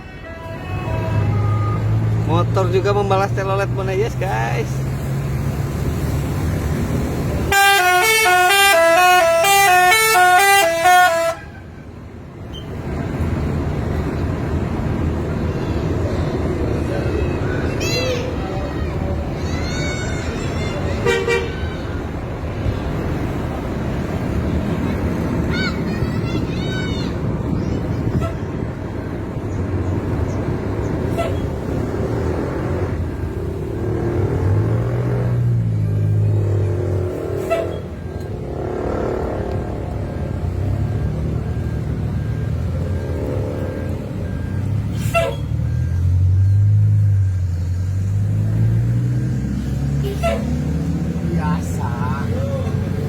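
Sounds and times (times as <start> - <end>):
road and engine noise: 0.0 - 53.0
multi-tone air horn tune: 7.5 - 11.7.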